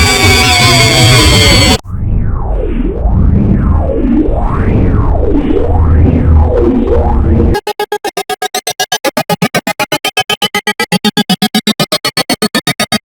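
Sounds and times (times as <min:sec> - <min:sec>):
stuttering electronic scream: 0:00.0 - 0:01.8, 0:07.5 - 0:13.0.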